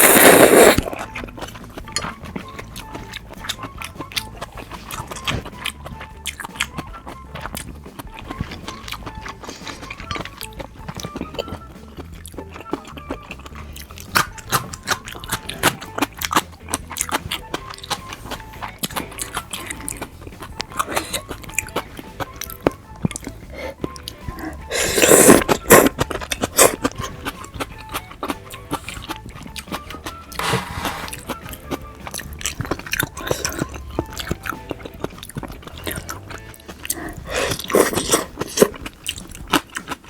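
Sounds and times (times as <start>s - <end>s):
loud slurp: 0.0s - 2.6s, 23.2s - 27.2s, 30.0s - 32.2s, 35.7s - 39.2s
close chewing with wet mouth clicks: 0.0s - 40.0s
soft background music: 0.0s - 40.0s.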